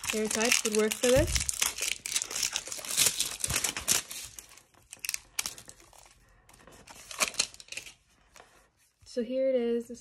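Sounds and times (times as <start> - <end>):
packaging crinkling: 0.0 - 8.0.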